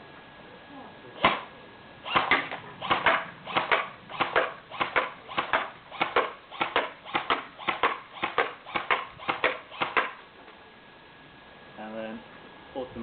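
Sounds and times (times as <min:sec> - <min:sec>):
airsoft rifle single shots: 0:01.2 - 0:10.2.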